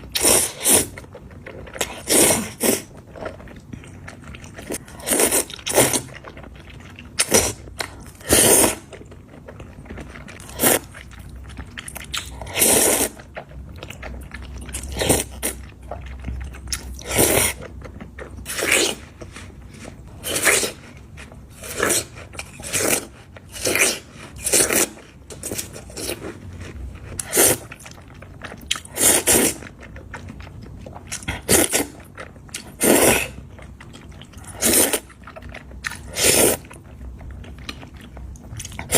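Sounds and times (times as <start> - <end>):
chewing noodles: 0.0 - 38.9.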